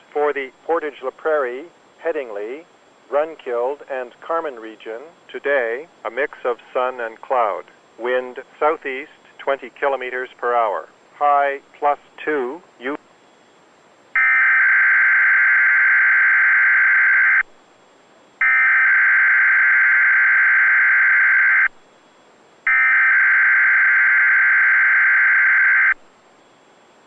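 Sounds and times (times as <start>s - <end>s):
faint hiss: 0.0s - 14.2s
screechy data tone bursts: 14.2s - 17.5s, 18.4s - 21.7s, 22.7s - 26.0s.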